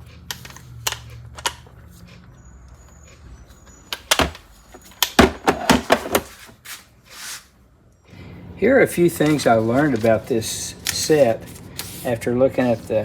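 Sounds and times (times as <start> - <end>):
hard tool parts clacking: 4.0 - 6.4.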